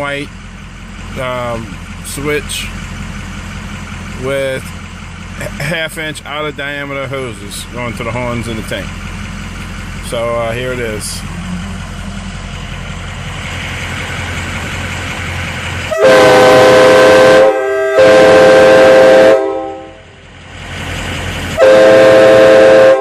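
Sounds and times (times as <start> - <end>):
train horn blasts: 15.9 - 20.1, 21.6 - 23.0.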